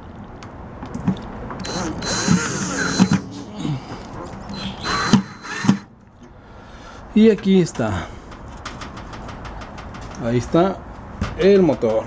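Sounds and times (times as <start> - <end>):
mechanical clicking: 0.9 - 3.4, 4.0 - 5.9
metal parts knocking: 0.9 - 5.9, 7.2 - 12.0
screwdriver whirring: 1.6 - 3.4, 4.2 - 5.9.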